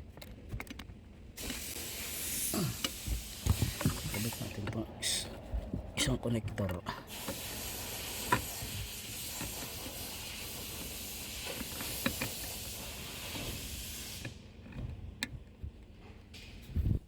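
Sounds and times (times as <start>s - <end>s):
steady hiss: 1.4s - 5.3s, 7.1s - 14.4s.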